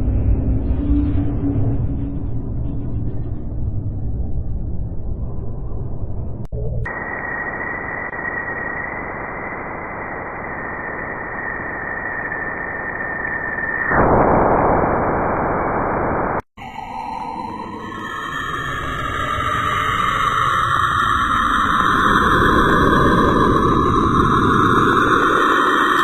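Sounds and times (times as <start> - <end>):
radio static hiss: 6.9 - 16.5.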